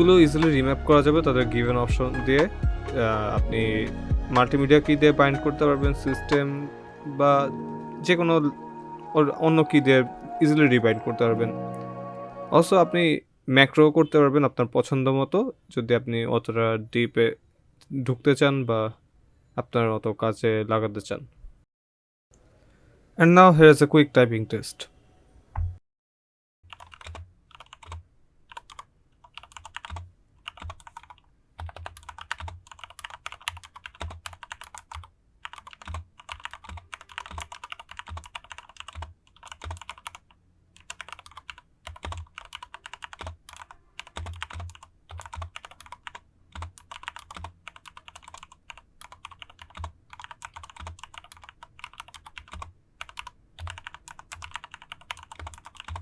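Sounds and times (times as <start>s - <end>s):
mechanical keyboard typing: 26.7s - 56.0s.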